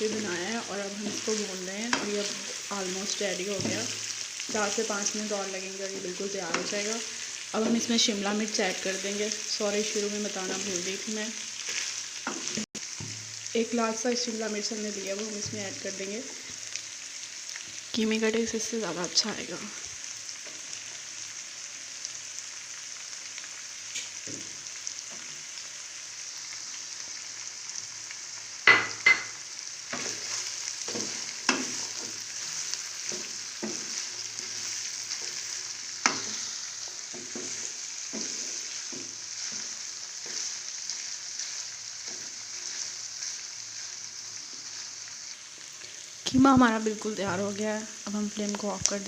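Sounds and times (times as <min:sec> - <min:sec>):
spoon scraping a pan: 0:00.0 - 0:05.2, 0:08.8 - 0:12.6, 0:28.6 - 0:45.1
food sizzling in a pan: 0:00.0 - 0:49.0
spoon knocking against pan: 0:28.6 - 0:29.4.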